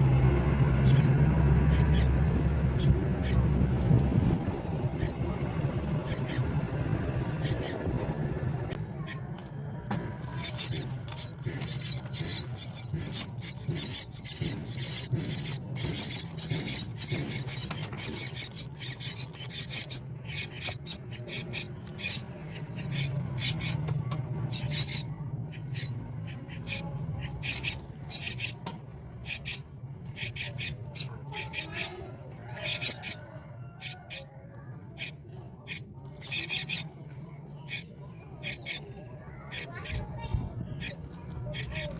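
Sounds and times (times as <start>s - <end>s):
bird nestlings begging calls: 0.8s - 3.4s, 4.9s - 5.3s, 5.9s - 7.8s, 9.0s - 9.2s, 10.3s - 23.8s, 24.4s - 28.6s, 29.2s - 33.2s, 33.8s - 34.2s, 35.0s - 36.8s, 38.4s - 38.8s, 39.5s - 41.9s.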